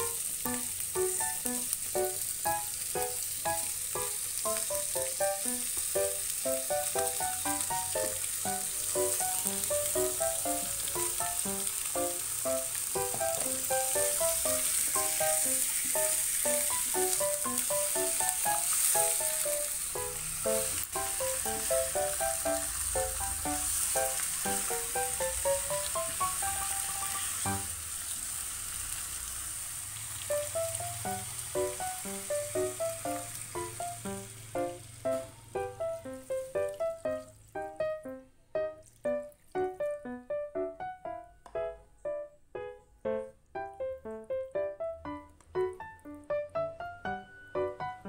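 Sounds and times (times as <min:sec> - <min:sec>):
background music melody: 0:00.0 - 0:27.8, 0:30.3 - 0:48.0
food sizzling in a pan: 0:00.0 - 0:37.8.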